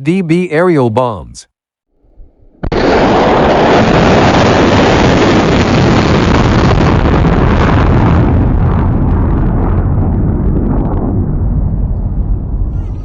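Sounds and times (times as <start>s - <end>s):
deep rumble: 2.0s - 13.0s
rocket launch rushing noise: 2.6s - 11.3s.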